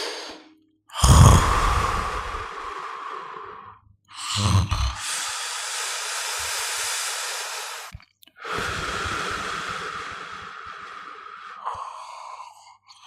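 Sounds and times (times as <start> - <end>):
person snoring: 0.0 - 12.6.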